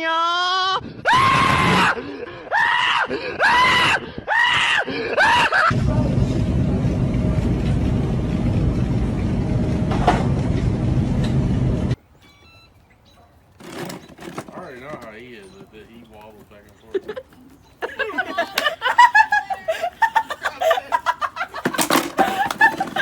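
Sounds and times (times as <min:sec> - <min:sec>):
steady low noise: 0:05.7 - 0:12.0.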